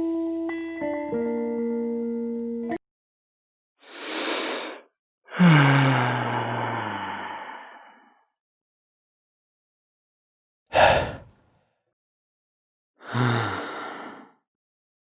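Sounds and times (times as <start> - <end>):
person sighing: 5.3 - 7.7, 10.7 - 11.3, 13.0 - 14.2.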